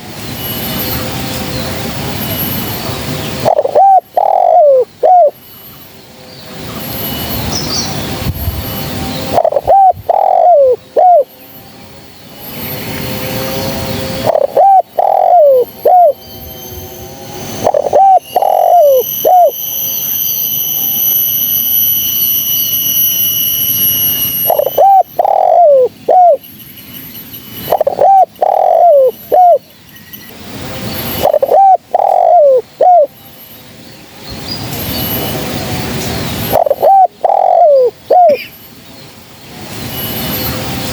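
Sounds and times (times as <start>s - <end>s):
steady high-pitched tone: 0.0s - 40.9s
dove cooing: 3.4s - 5.4s, 9.3s - 11.3s, 14.2s - 16.2s, 17.6s - 19.5s, 24.5s - 26.4s, 27.6s - 29.7s, 31.2s - 33.1s, 36.5s - 38.5s.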